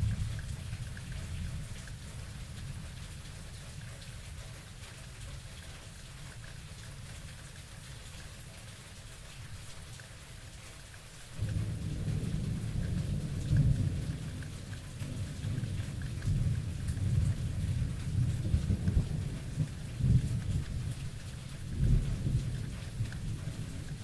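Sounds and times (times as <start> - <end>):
steady rain: 0.0 - 24.0
thunder rumbling: 11.4 - 24.0.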